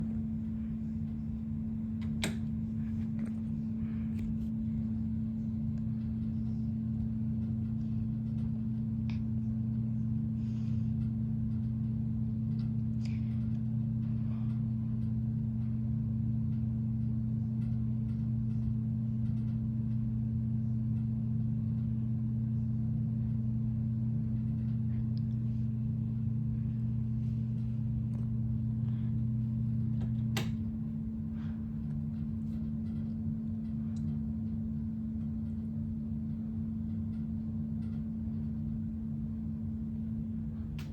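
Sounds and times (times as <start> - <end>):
ceiling fan motor hum: 0.0 - 40.9.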